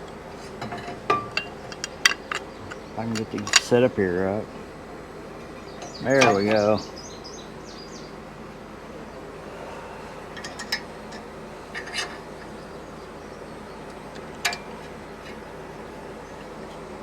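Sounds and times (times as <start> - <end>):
outdoor background noise: 0.0 - 17.0
metallic clicks of tools handled: 1.4 - 3.7.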